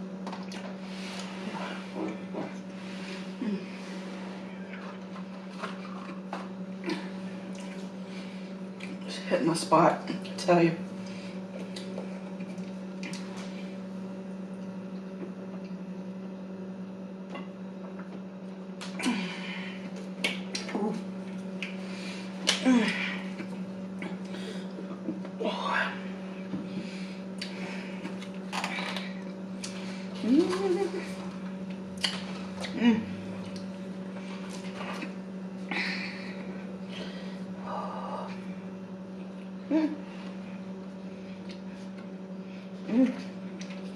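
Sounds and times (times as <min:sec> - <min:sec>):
steady low hum: 0:00.0 - 0:43.9
person chewing: 0:32.0 - 0:32.8.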